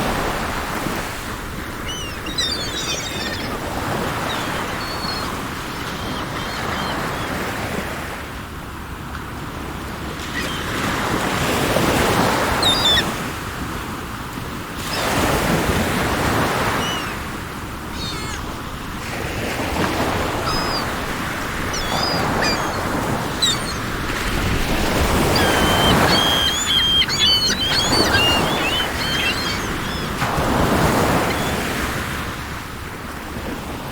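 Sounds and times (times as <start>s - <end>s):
sea waves breaking: 0.0s - 33.9s
faint bird chirps: 1.6s - 7.3s, 12.6s - 13.1s, 16.7s - 17.2s, 17.9s - 18.6s, 20.0s - 31.7s.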